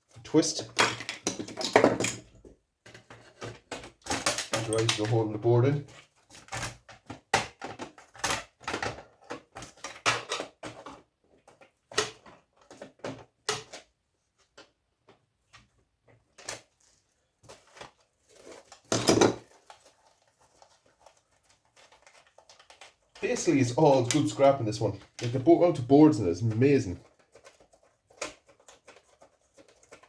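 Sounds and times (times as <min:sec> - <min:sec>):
plastic casing clicking and clattering: 0:00.7 - 0:05.2, 0:05.9 - 0:13.9.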